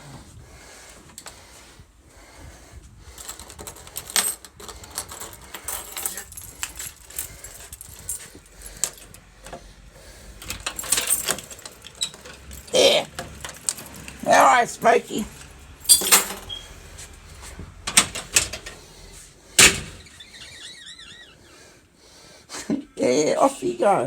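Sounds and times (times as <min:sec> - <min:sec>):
light rattling and clicking: 0:03.2 - 0:16.6, 0:17.6 - 0:19.0.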